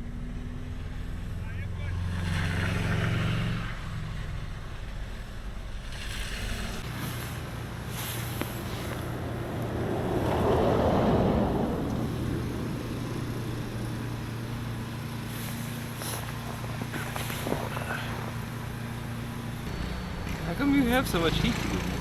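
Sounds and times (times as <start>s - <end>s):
engine idling: 11.3s - 22.0s.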